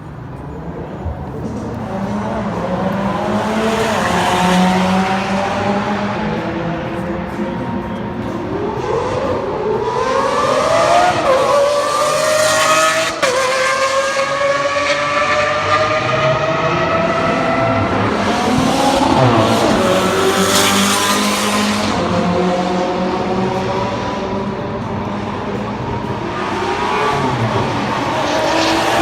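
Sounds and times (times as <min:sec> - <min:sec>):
car engine accelerating: 0:01.0 - 0:29.0.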